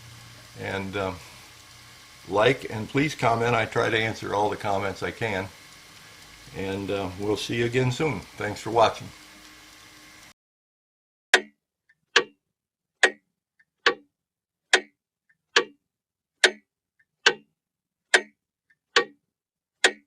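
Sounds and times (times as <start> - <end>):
clock ticking: 0.5 - 9.8, 12.2 - 12.4, 13.0 - 13.2, 13.8 - 14.1, 14.7 - 15.0, 15.6 - 15.8, 16.4 - 16.6, 17.2 - 17.5, 18.1 - 18.4, 19.0 - 19.2.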